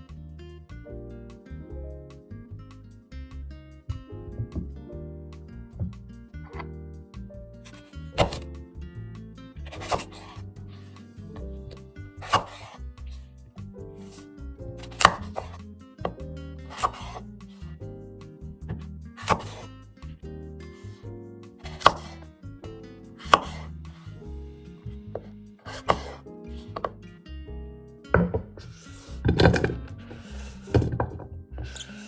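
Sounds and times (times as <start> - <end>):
knife chopping on cutting board: 7.7 - 8.5, 9.7 - 10.5, 11.4 - 12.8, 14.0 - 17.3, 18.7 - 19.7, 21.6 - 22.3, 23.2 - 23.8, 25.2 - 27.0, 28.2 - 31.8.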